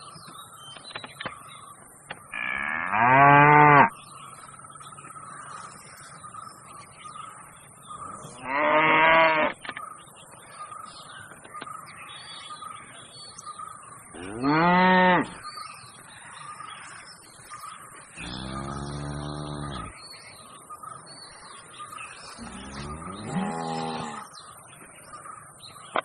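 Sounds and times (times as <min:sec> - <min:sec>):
bull mooing: 0:18.2 - 0:19.9, 0:22.4 - 0:24.2.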